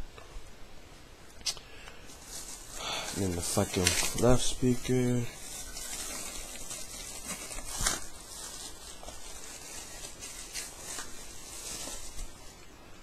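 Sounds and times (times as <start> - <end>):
steady hiss: 0.0 - 13.0
cable handling clicks and rustles: 3.1 - 12.7.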